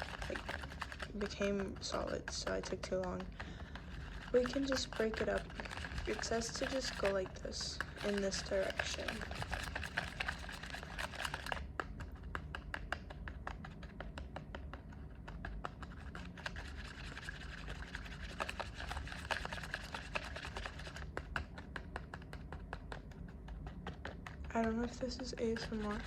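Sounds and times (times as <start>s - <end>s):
plastic spoon scraping plastic tray: 0.0s - 11.6s, 24.6s - 26.0s.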